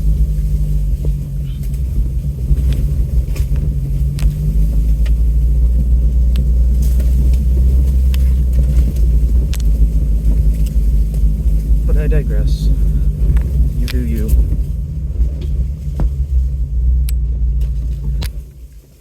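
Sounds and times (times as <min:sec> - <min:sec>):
low engine and drivetrain rumble: 0:00.0 - 0:19.0
knocks and rattles from bumps: 0:12.8 - 0:19.0.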